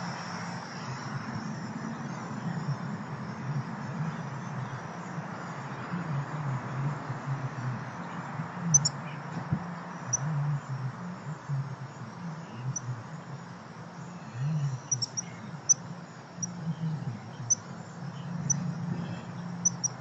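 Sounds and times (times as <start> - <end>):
steady outdoor hiss: 0.0 - 20.0.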